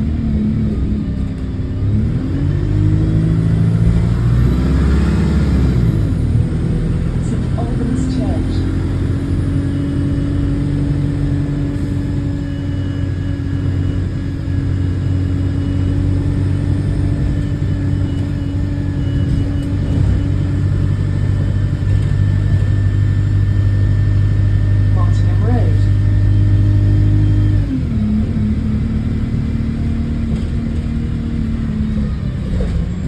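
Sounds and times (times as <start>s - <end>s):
bus diesel engine drone: 0.0s - 33.0s.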